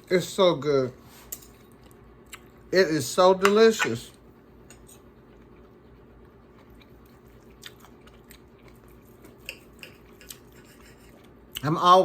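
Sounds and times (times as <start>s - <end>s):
faint chewing: 4.7s - 11.7s.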